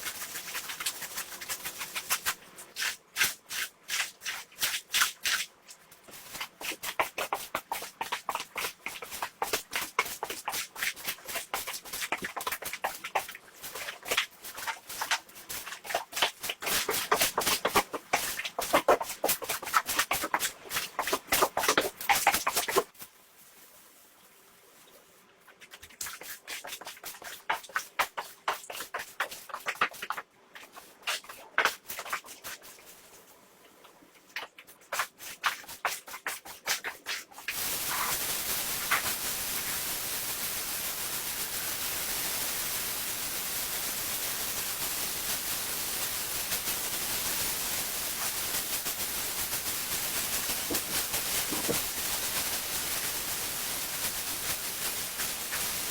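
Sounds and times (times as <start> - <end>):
cleaning machine hissing: 37.5 - 55.9.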